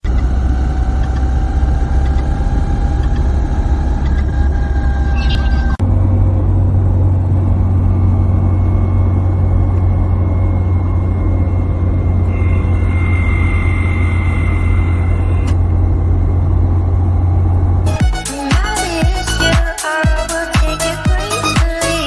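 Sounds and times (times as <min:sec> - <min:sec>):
car engine drone: 0:00.0 - 0:22.0
thin high whine: 0:07.9 - 0:22.0.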